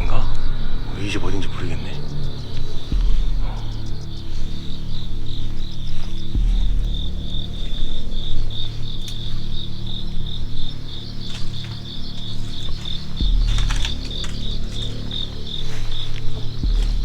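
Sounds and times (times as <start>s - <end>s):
crickets chirping: 0.0s - 17.0s
loud low rumble: 0.0s - 17.0s
low thump: 2.9s - 4.5s, 6.3s - 7.7s.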